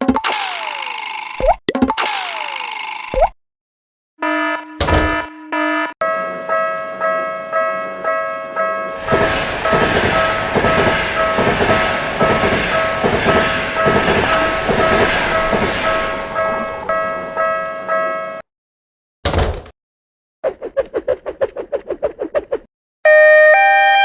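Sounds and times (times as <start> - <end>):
railway crossing bell ringing: 6.0 - 18.4
train rumble and wheel clatter: 8.9 - 18.0.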